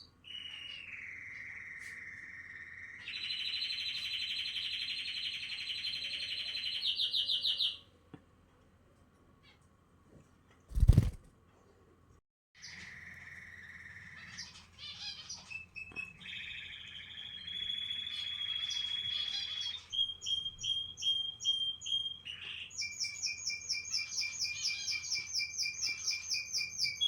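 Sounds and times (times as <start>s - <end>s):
canary singing trills: 12.6s - 27.0s.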